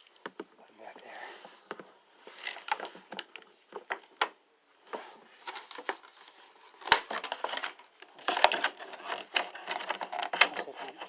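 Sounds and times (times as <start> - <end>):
plastic packaging crackling: 2.3 - 4.2, 5.4 - 11.0.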